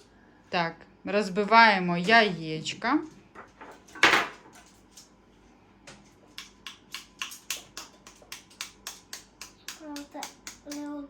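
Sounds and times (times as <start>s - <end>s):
egg tapping on bowl rim: 6.4s - 10.9s.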